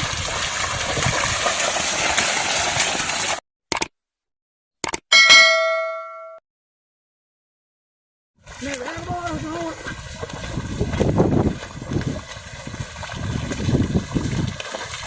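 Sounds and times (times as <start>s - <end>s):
rushing splashing water: 0.0s - 3.4s, 8.4s - 15.0s
short clicks: 3.7s - 3.9s, 4.8s - 5.1s
bell-like metallic ding: 5.1s - 6.4s.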